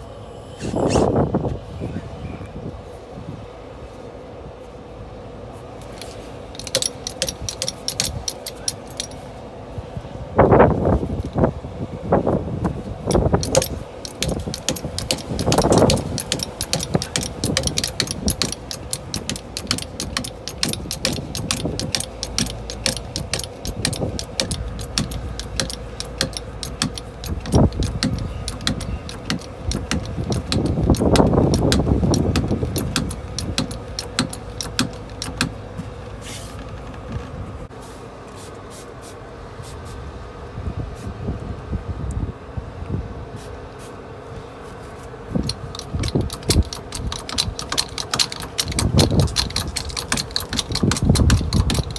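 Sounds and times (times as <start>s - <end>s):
metal tools clinking on wheel: 5.9s - 9.3s, 13.1s - 36.2s, 45.4s - 51.9s
heavy thumps: 13.1s - 37.7s.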